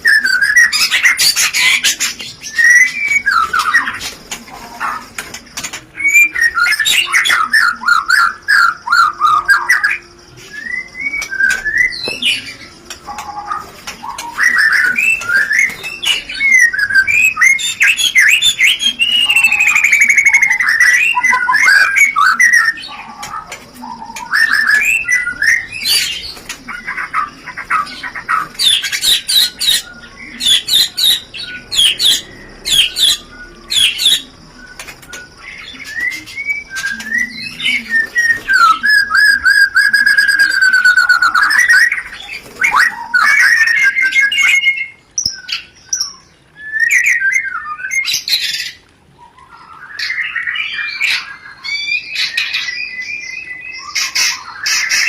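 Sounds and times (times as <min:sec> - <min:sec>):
bird chattering calls: 0:10.8 - 0:46.2.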